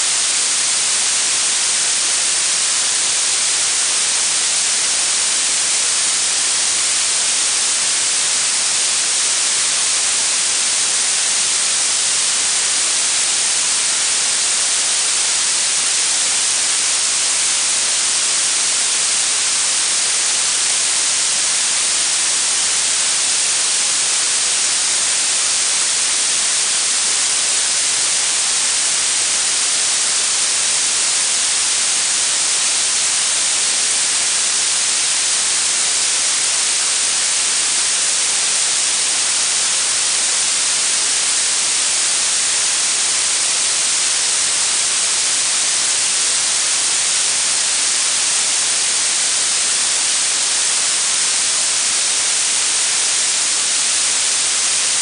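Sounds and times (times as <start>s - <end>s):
steady high hiss: 0.0s - 55.0s.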